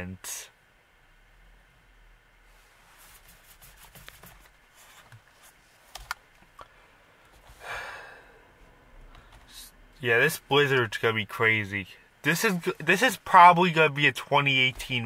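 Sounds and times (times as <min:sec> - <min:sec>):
handling noises: 0:02.6 - 0:07.6.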